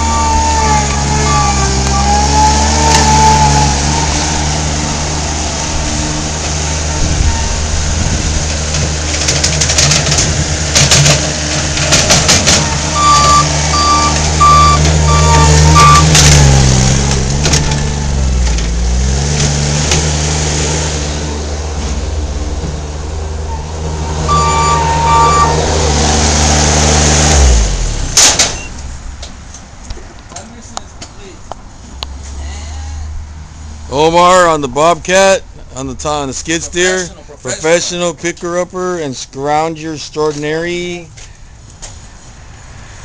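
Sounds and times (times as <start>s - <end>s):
reversing alarm beeping: 0.0s - 3.7s, 12.6s - 16.2s, 24.3s - 25.9s
skid steer engine running: 0.0s - 28.9s
knocks and clanks: 8.4s - 20.1s, 28.2s - 29.7s
sharp noise: 10.7s - 17.1s, 24.0s - 28.7s.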